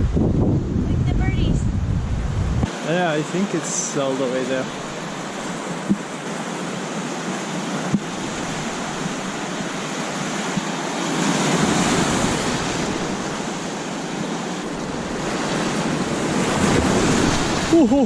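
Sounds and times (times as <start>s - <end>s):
wind buffeting microphone: 0.0s - 2.7s
surf washing on beach: 0.0s - 18.0s.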